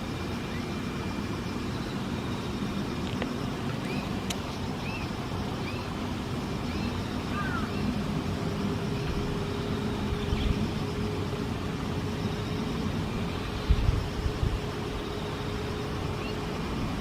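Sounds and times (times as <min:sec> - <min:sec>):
faint steady hum: 0:00.0 - 0:17.0
swallows chirping: 0:03.5 - 0:08.1.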